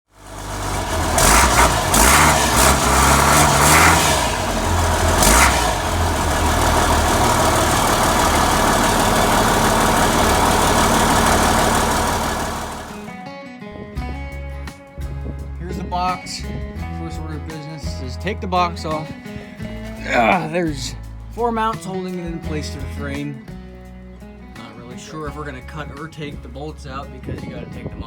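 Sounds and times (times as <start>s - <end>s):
diesel engine revving: 0.1s - 13.1s.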